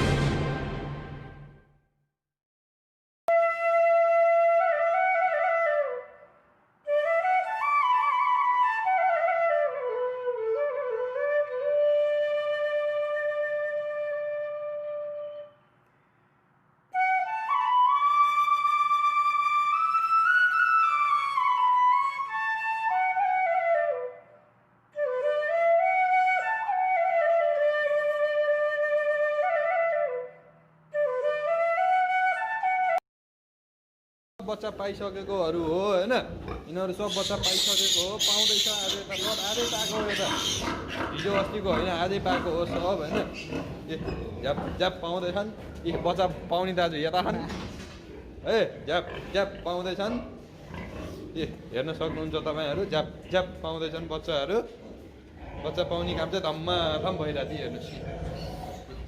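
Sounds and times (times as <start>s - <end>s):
solo flute melody: 3.3s - 6.3s, 6.9s - 15.6s, 17.0s - 24.3s, 25.0s - 33.0s.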